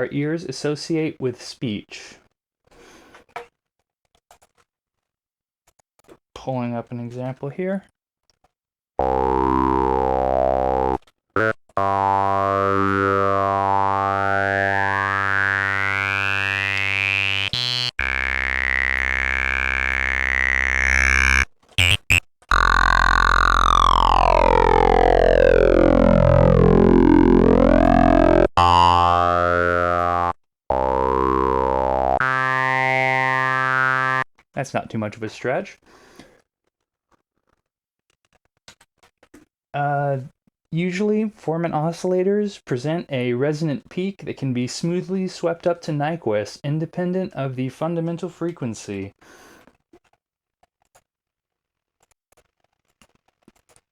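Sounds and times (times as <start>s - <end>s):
synthesizer sustained low notes: 9.0s - 34.2s.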